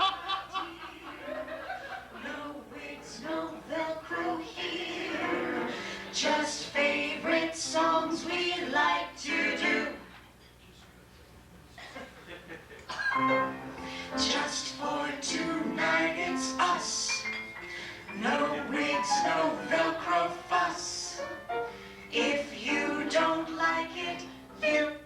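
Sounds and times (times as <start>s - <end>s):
piano accompaniment: 2.4s - 9.9s, 13.0s - 25.0s.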